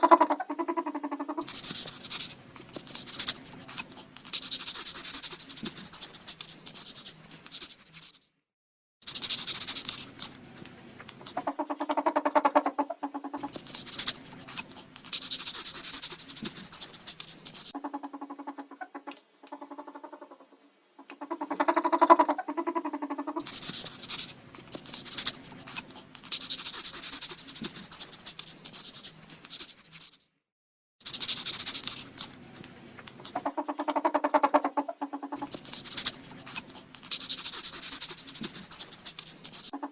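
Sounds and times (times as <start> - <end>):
ferret clucking chatter: 0.0 - 8.0, 9.0 - 10.4, 11.0 - 30.0, 31.0 - 32.4, 33.0 - 39.9
hissy scratchy noise: 35.3 - 39.7.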